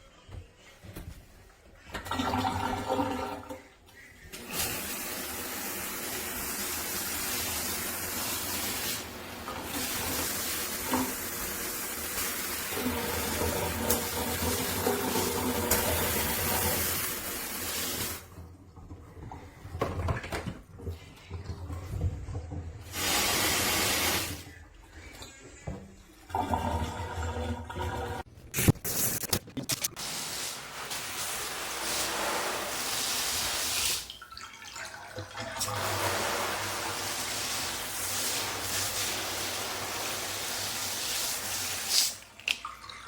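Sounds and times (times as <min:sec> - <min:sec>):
faucet sprayer water splashing: 0:04.4 - 0:18.3, 0:22.9 - 0:24.4, 0:30.0 - 0:34.2, 0:35.6 - 0:42.8.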